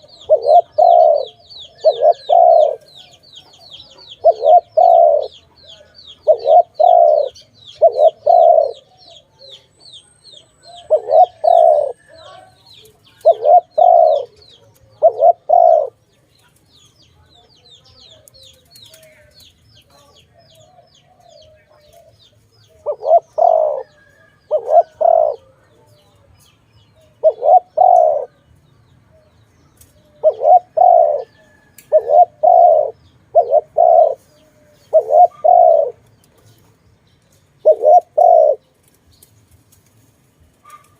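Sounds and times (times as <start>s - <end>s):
dove cooing: 0.0s - 9.8s, 10.4s - 16.0s, 22.8s - 25.6s, 27.0s - 28.4s, 30.1s - 36.0s, 37.6s - 38.6s.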